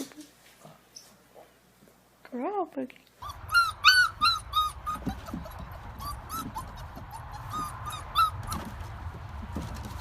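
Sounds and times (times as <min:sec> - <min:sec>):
dog whining: 0:03.2 - 0:08.8.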